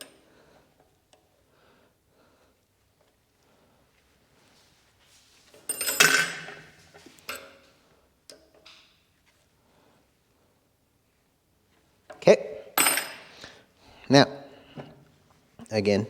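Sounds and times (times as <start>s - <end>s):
metal tools clattering: 5.6s - 7.6s, 12.8s - 13.4s.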